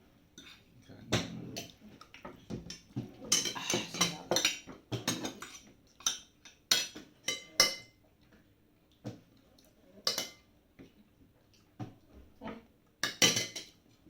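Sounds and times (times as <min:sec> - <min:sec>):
cutlery clinking against a plate: 0:01.2 - 0:08.0, 0:10.0 - 0:10.4, 0:13.0 - 0:13.8.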